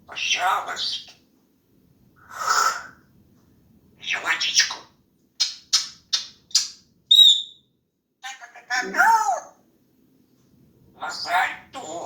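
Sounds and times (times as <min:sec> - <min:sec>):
parrot high whistle: 0:07.1 - 0:07.6.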